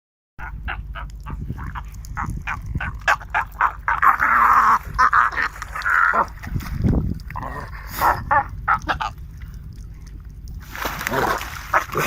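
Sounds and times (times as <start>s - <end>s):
birds calling: 0.4s - 12.0s
steady low rumble: 0.4s - 12.0s.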